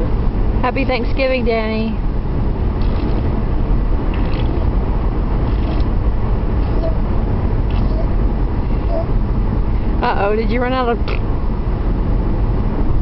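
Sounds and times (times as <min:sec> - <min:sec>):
low rumble: 0:00.0 - 0:13.0
person blowing raspberries: 0:05.4 - 0:05.9.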